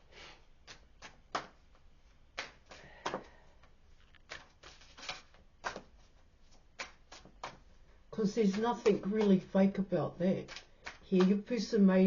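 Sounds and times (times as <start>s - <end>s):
cards snapping and tapping: 0.6s - 1.7s, 2.3s - 7.7s, 8.4s - 9.4s, 10.4s - 11.6s.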